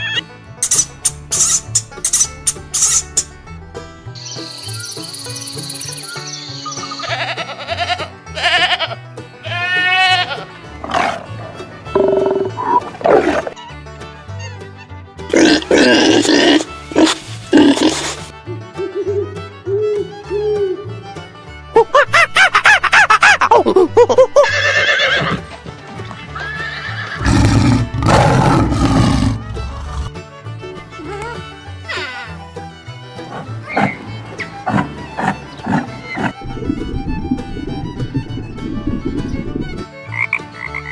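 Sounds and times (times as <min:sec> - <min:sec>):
background music with bass line: 0:00.0 - 0:40.9
bleat-like animal calls: 0:06.9 - 0:10.4
horse whinnying: 0:24.4 - 0:25.4, 0:26.4 - 0:30.1.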